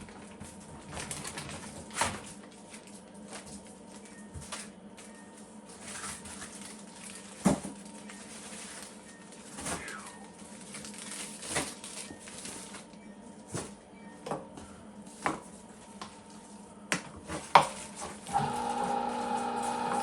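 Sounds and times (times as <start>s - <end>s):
electric meat grinder humming: 18.2s - 20.0s.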